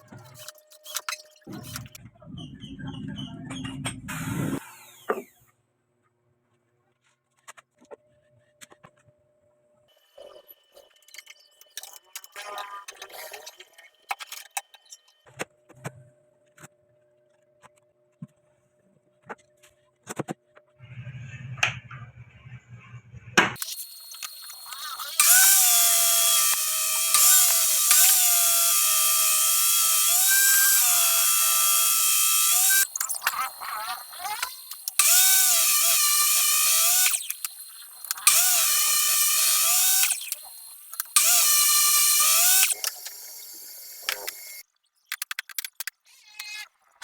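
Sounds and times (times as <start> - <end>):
table saw cutting wood: 4.0 - 5.4, 23.6 - 44.6
saw motor whine: 23.6 - 44.6.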